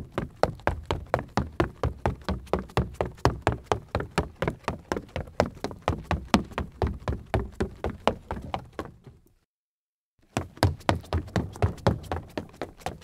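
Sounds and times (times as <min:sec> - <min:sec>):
sneakers running on wooden floor: 0:00.0 - 0:09.2, 0:10.3 - 0:13.0.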